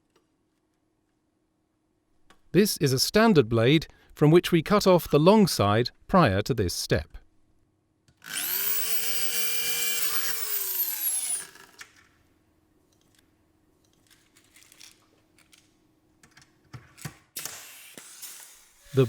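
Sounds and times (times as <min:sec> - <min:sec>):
power tool motor whining: 0:08.3 - 0:11.7, 0:18.8 - 0:19.0.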